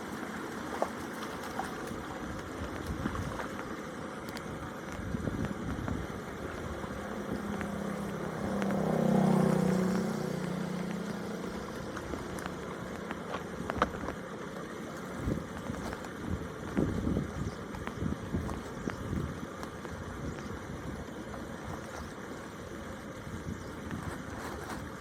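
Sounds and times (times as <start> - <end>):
vehicle engine passing by: 6.7 - 13.0.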